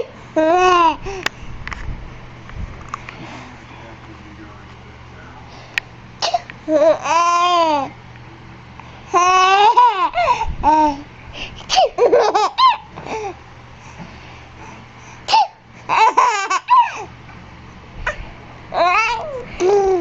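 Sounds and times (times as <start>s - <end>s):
baby laughing and squealing: 11.7s - 12.9s, 15.9s - 17.1s, 18.8s - 20.0s.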